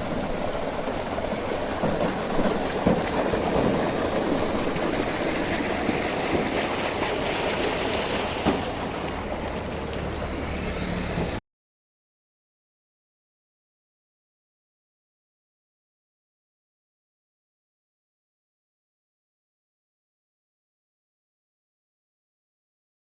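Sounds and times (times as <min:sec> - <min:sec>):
water gushing from pump: 0:00.0 - 0:11.4.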